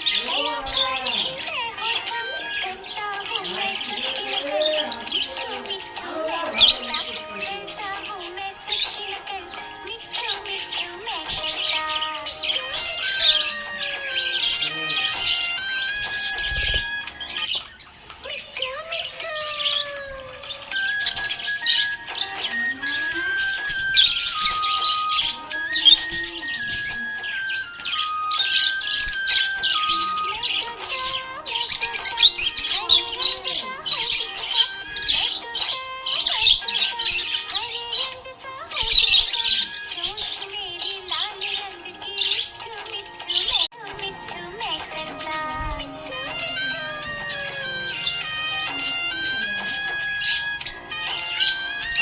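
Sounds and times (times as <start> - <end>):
budgerigars chirping: 0.0 - 43.7, 44.5 - 52.0.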